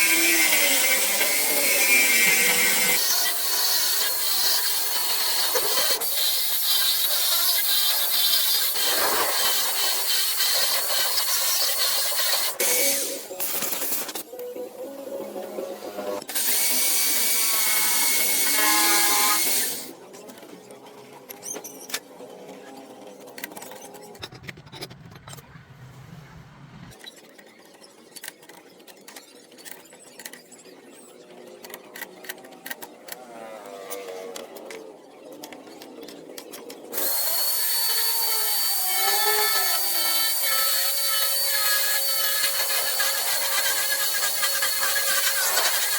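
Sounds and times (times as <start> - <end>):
power tool whining: 0.0 - 13.4, 37.0 - 45.9.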